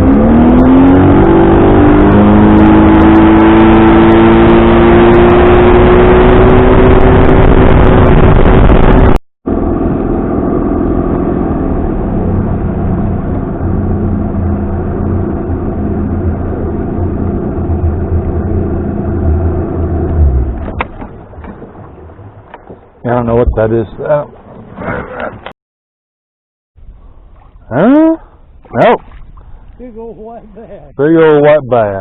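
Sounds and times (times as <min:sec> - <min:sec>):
outboard motor running: 0:09.5 - 0:25.5.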